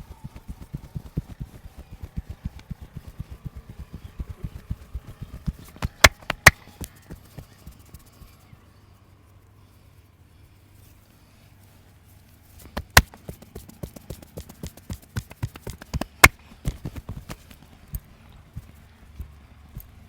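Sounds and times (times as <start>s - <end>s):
hands patting on body: 0.0s - 8.4s, 12.6s - 20.0s
sharp cracks: 0.1s - 7.5s, 12.6s - 17.6s.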